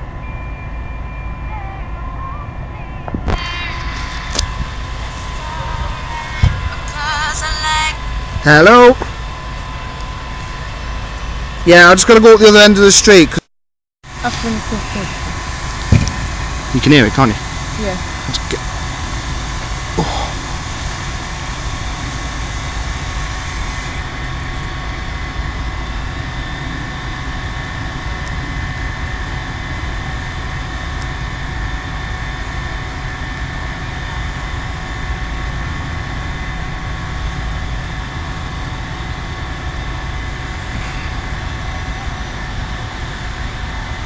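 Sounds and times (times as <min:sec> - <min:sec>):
faint steady hum: 0:00.0 - 0:13.4
burning gas rushing: 0:03.0 - 0:13.4, 0:14.1 - 0:44.0.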